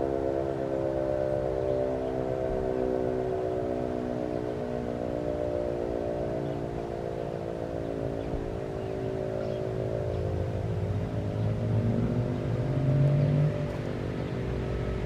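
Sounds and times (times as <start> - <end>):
warning siren wailing: 0.0 - 15.0.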